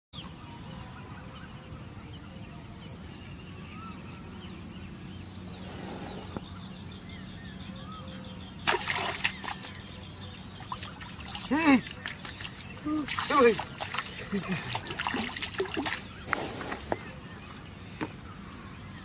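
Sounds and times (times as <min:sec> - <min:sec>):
faint bird calls: 0:03.0 - 0:19.0
water splashing: 0:08.6 - 0:17.1.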